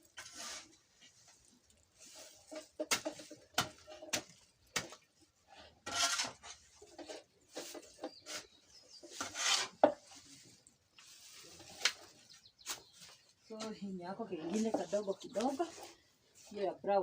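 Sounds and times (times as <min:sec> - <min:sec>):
metal scraping rustle: 0:00.0 - 0:13.3.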